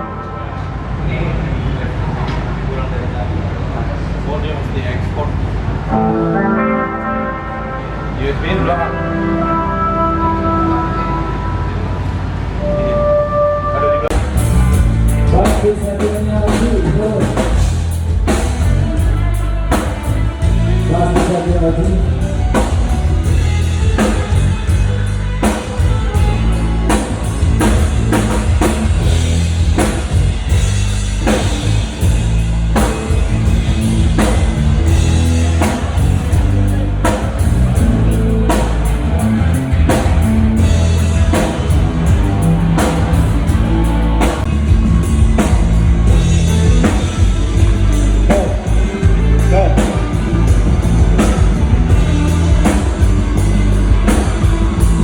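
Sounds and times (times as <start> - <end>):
drum kit hits: 14.1 - 55.0
rock band playing live: 14.1 - 55.0.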